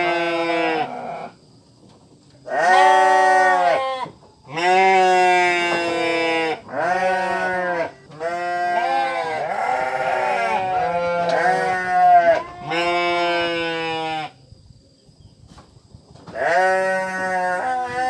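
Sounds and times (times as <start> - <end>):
sheep bleating: 4.6 - 14.3, 16.4 - 18.0.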